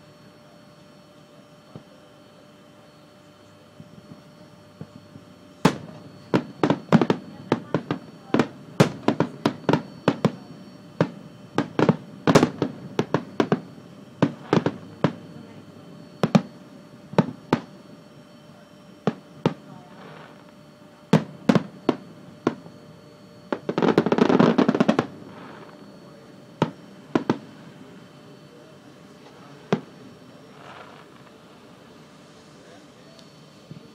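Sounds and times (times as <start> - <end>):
fireworks crackling: 5.6 - 15.6, 16.2 - 17.8, 19.0 - 20.5, 23.5 - 28.0, 29.1 - 33.9
fireworks bangs: 5.6 - 17.8, 19.0 - 20.4, 21.1 - 22.8, 23.4 - 27.8, 28.5 - 31.5.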